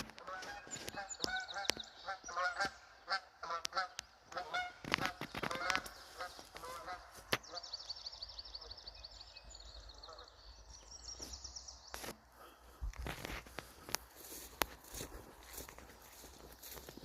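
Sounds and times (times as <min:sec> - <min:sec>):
clicks and steps: 0:00.0 - 0:01.9, 0:03.6 - 0:07.4, 0:12.8 - 0:17.0
geese honking: 0:00.0 - 0:07.7.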